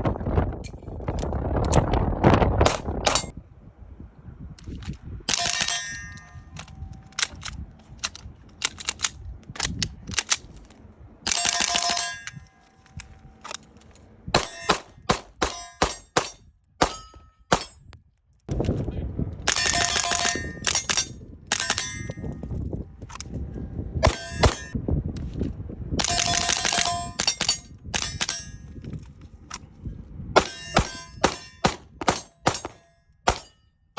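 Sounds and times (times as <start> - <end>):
steel targets ringing: 5.4 - 6.9, 11.3 - 13.4, 14.3 - 17.9, 24.0 - 24.8, 30.4 - 33.9
rifle shots: 14.4 - 17.8.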